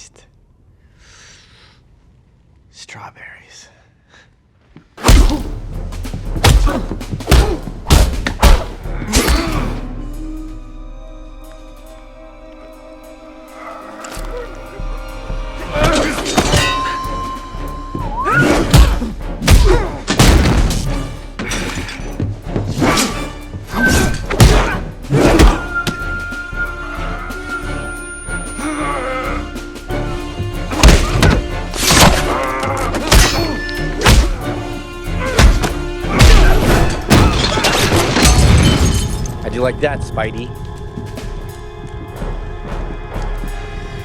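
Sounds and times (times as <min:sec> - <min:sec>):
dramatic film score: 0:00.0 - 0:44.0
background music: 0:04.9 - 0:44.0
heavy punch impacts: 0:06.4 - 0:09.4, 0:18.7 - 0:20.9
shattering: 0:35.4 - 0:39.4.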